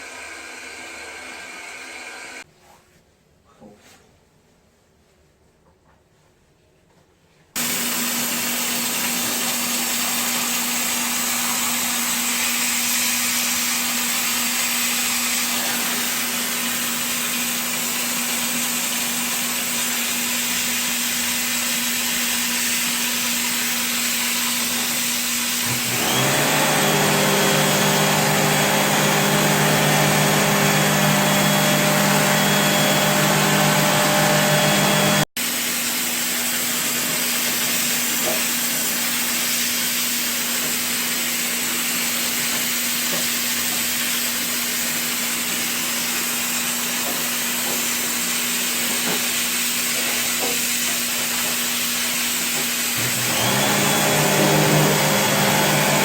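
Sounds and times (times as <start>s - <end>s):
hiss of spraying: 7.6s - 25.2s
whining motor: 25.6s - 35.3s, 53.0s - 56.0s
low motor hum: 25.7s - 35.3s.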